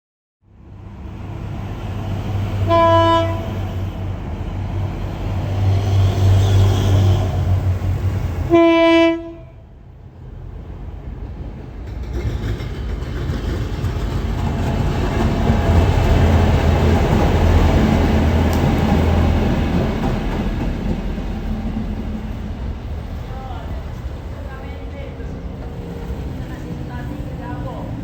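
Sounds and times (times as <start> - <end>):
locomotive engine drone: 0.5 - 28.0
wheels rumbling on rail: 0.5 - 28.0
locomotive horn: 2.6 - 3.8, 8.4 - 9.6.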